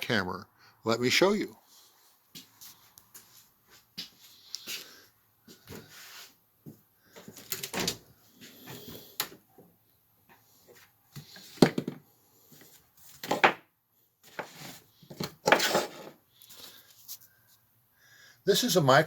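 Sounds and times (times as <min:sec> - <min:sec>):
objects knocking and clattering: 0:11.4 - 0:12.1, 0:13.2 - 0:13.7, 0:14.3 - 0:16.2.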